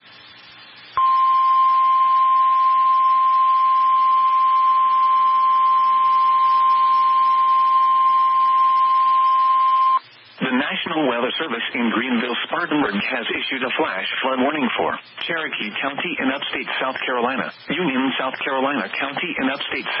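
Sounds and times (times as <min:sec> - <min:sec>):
faint hiss: 0:00.0 - 0:01.0
steady high alarm tone: 0:01.0 - 0:10.0.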